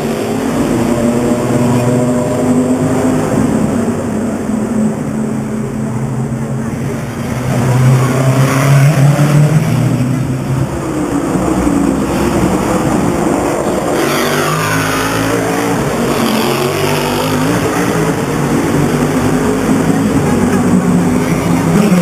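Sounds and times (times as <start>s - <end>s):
race cars passing: 0.0s - 22.0s.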